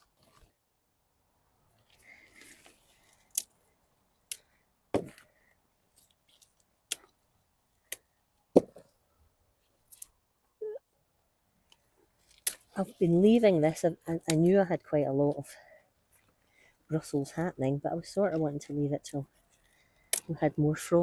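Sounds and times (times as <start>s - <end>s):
sprouts snapping off a stalk: 2.3s - 3.6s, 9.8s - 10.1s, 12.2s - 13.0s, 14.2s - 14.5s.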